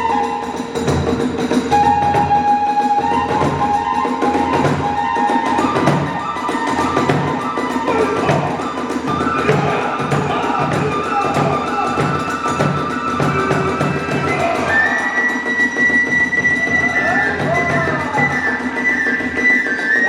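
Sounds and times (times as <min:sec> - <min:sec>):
bamboo flute high notes: 0:00.0 - 0:20.0
big drum steady beat: 0:09.3 - 0:14.8.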